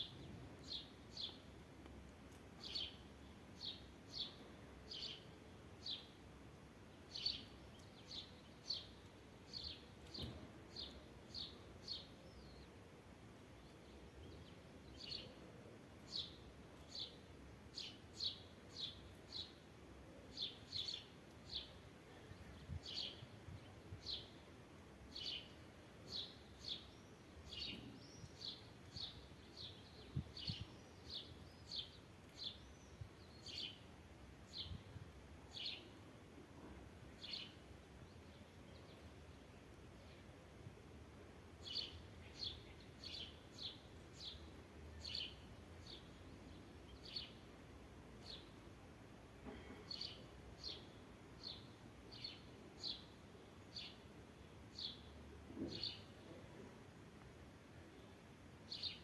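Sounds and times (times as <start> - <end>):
bird chirping: 41.6 - 47.5.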